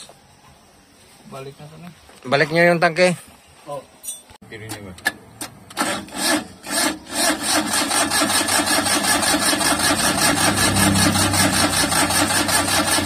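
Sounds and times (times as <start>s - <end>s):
engine cranking on starter motor: 5.7s - 13.0s.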